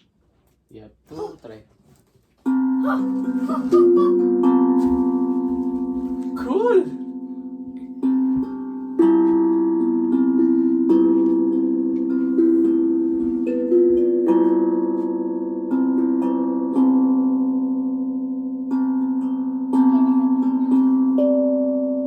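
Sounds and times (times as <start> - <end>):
steel tongue drum melody: 2.4 - 22.0.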